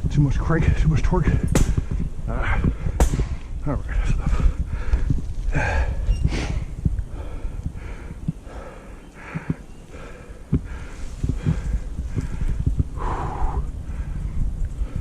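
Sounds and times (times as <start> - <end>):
wind rumble on microphone: 0.0 - 15.0
person breathing hard: 4.1 - 15.0.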